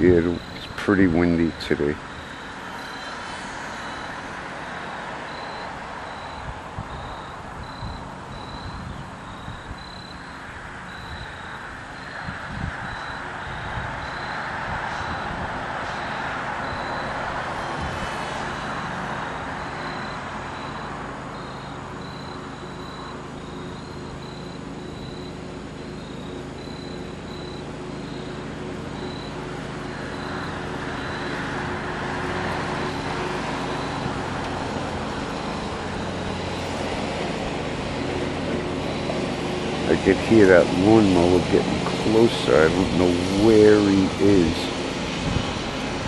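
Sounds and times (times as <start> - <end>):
wind rumbling on microphone: 0.0 - 22.2, 39.5 - 46.0
lawnmower engine droning: 0.0 - 46.0.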